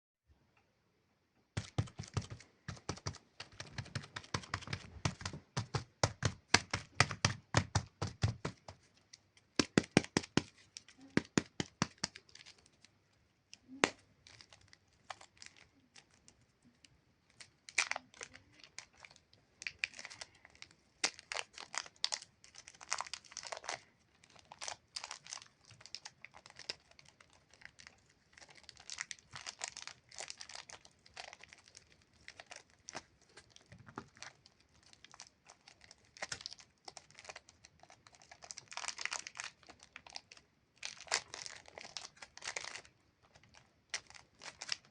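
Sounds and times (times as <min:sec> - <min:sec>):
plastic wrappers crinkling and tearing: 0:01.6 - 0:12.9, 0:13.5 - 0:16.5, 0:17.2 - 0:44.9.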